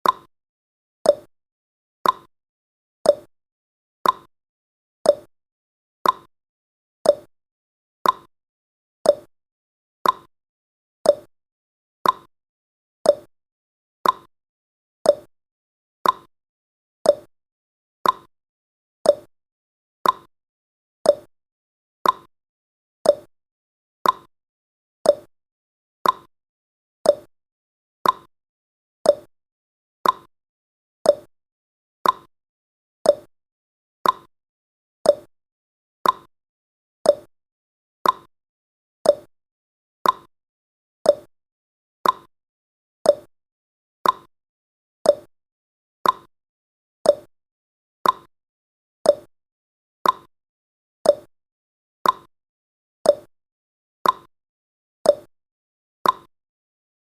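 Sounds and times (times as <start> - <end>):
timer tick pops: 0.0 - 0.3, 1.0 - 1.3, 2.0 - 2.3, 3.0 - 3.3, 4.0 - 4.3, 5.1 - 5.3, 6.0 - 6.3, 7.0 - 7.3, 8.0 - 8.3, 9.0 - 9.3, 10.0 - 10.3, 11.0 - 11.3, 12.0 - 12.3, 13.0 - 13.3, 14.0 - 14.3, 15.0 - 15.3, 16.0 - 16.3, 17.0 - 17.3, 18.0 - 18.3, 19.0 - 19.3, 20.0 - 20.3, 21.0 - 21.3, 22.0 - 22.3, 23.0 - 23.3, 24.0 - 24.3, 25.0 - 25.3, 26.0 - 26.3, 27.0 - 27.3, 28.0 - 28.3, 29.0 - 29.3, 30.0 - 30.3, 31.0 - 31.3, 32.0 - 32.3, 33.0 - 33.3, 34.0 - 34.3, 35.0 - 35.3, 36.0 - 36.3, 37.0 - 37.3, 38.0 - 38.3, 39.0 - 39.3, 40.0 - 40.3, 41.0 - 41.3, 42.0 - 42.3, 43.0 - 43.3, 44.0 - 44.3, 45.0 - 45.3, 46.0 - 46.3, 47.0 - 47.3, 48.0 - 48.3, 49.0 - 49.3, 50.0 - 50.3, 51.0 - 51.3, 52.0 - 52.3, 53.1 - 53.3, 54.0 - 54.3, 55.0 - 55.3, 56.0 - 56.3.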